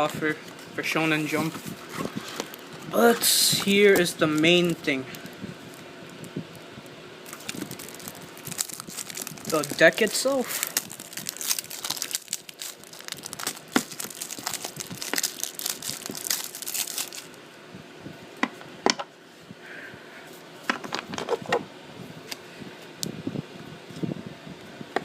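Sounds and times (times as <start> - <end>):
packaging crinkling and tearing: 3.6 - 5.4, 7.2 - 17.4.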